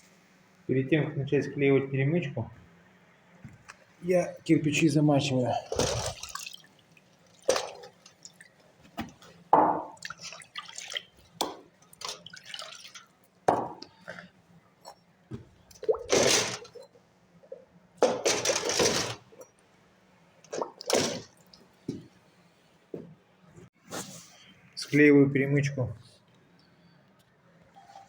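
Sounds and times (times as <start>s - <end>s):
bricks splashing into water: 5.6s - 13.8s, 15.7s - 16.8s, 20.5s - 21.6s.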